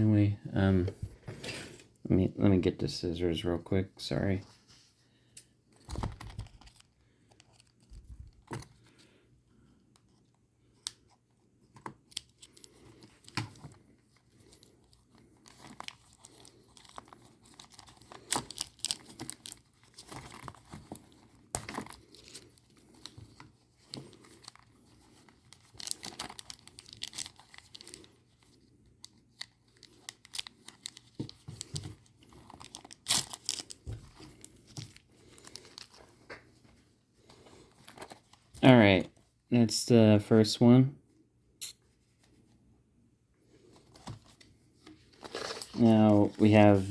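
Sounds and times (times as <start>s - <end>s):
packaging tearing and crinkling: 15.4s - 23.1s, 24.0s - 28.0s, 32.4s - 35.9s.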